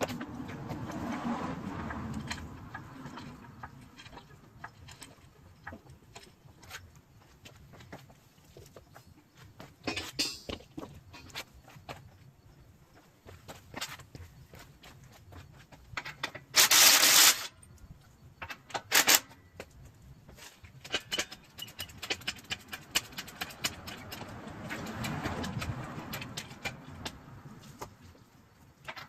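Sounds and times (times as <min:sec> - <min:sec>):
tools clicking and knocking: 0:01.8 - 0:08.1, 0:09.6 - 0:12.0, 0:15.9 - 0:17.5, 0:18.4 - 0:19.8, 0:20.6 - 0:27.2.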